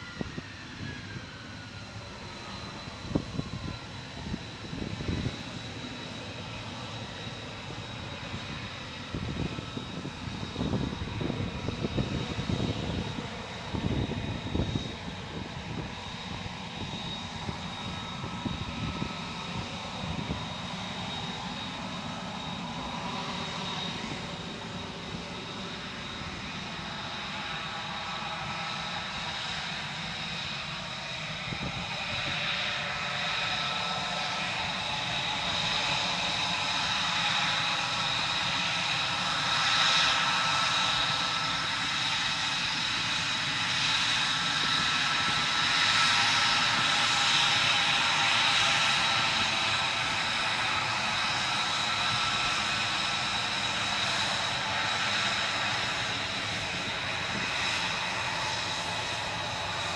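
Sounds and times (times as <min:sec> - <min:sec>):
jet engine whine and rush: 0:00.0 - 0:59.9.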